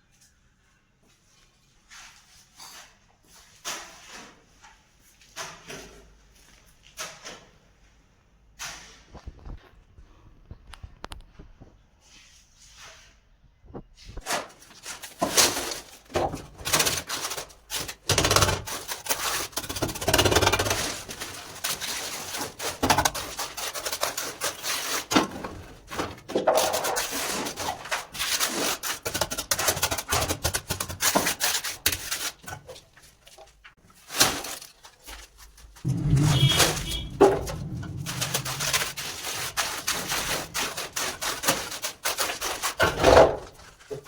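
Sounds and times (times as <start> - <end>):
tools scraping and knocking on concrete: 14.2 - 44.0.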